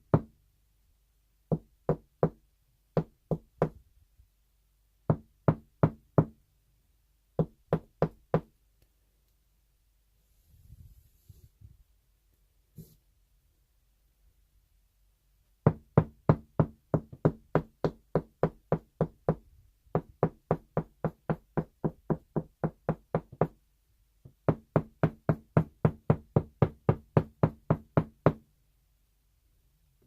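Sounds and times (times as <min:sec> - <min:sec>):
knocking on a wall: 0:00.0 - 0:00.3, 0:03.0 - 0:03.8, 0:05.1 - 0:06.4, 0:07.4 - 0:08.5, 0:15.7 - 0:23.6, 0:24.2 - 0:28.4.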